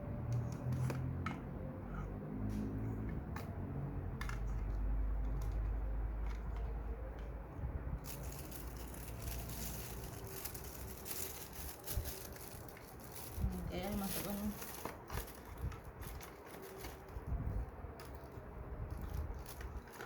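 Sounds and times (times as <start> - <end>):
plastic wrapping crinkling: 8.0 - 17.2
packaging handling rumble: 8.0 - 20.0.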